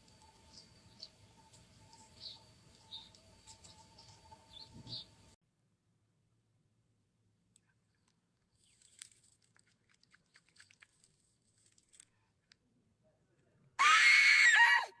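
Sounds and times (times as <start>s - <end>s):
cucumber crunching and chewing: 8.0s - 12.1s.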